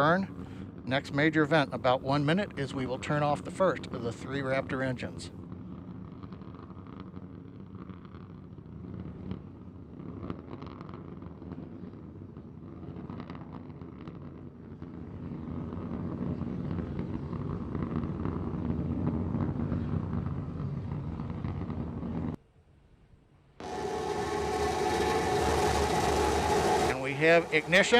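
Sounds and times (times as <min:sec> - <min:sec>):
rocket engines rumbling: 0:00.0 - 0:05.3, 0:23.6 - 0:27.9.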